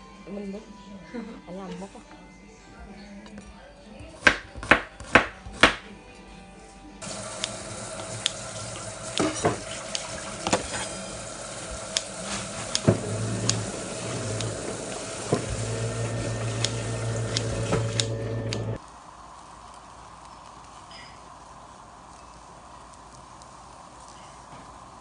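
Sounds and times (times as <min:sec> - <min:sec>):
tap running into sink: 0:07.0 - 0:18.6
low hum: 0:10.2 - 0:23.0.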